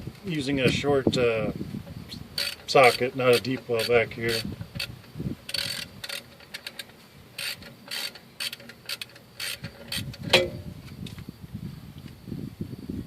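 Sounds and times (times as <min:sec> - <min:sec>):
socket ratchet clicking: 0:02.3 - 0:10.6
metallic clank: 0:05.5 - 0:10.8.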